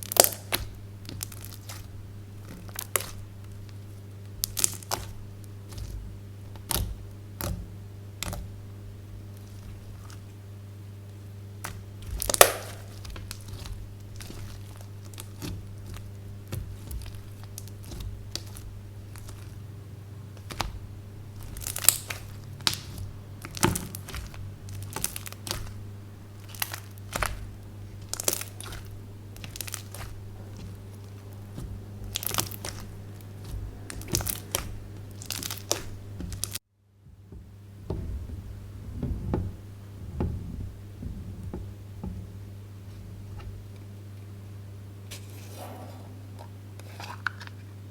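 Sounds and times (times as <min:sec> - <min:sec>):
slime crackling and popping: 0:00.0 - 0:08.6, 0:11.6 - 0:36.6
steady low hum: 0:00.0 - 0:47.9.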